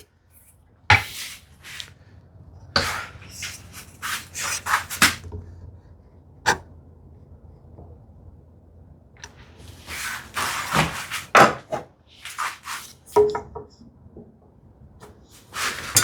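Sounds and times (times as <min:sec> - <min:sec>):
wooden parts knocking and scraping: 0:15.6 - 0:16.0.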